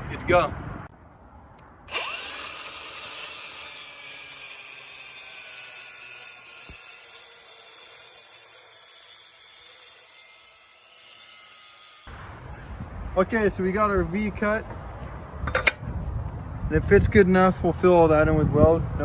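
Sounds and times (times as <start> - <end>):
angle grinder cutting steel: 1.9 - 12.1.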